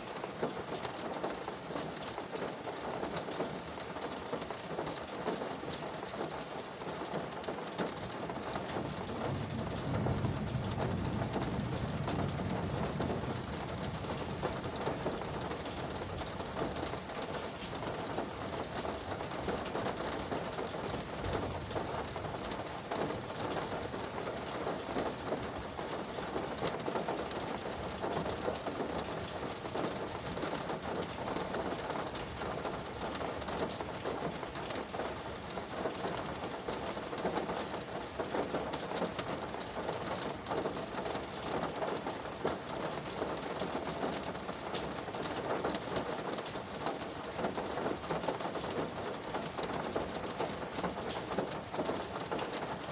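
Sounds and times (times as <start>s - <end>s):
rain on a car roof: 0.0s - 52.9s.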